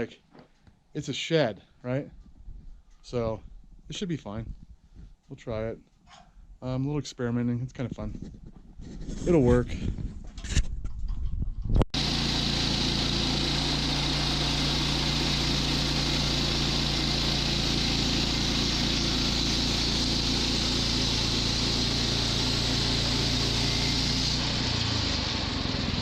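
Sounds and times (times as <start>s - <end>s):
sawmill gas engine running: 12.0s - 26.0s.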